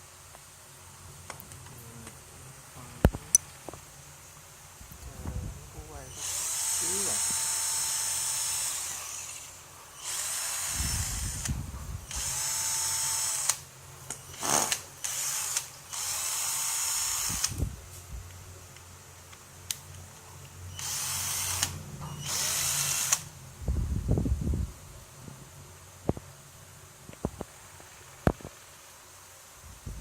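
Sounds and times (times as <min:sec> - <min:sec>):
cordless drill whining: 0:06.1 - 0:13.6, 0:14.2 - 0:17.7, 0:20.7 - 0:23.3.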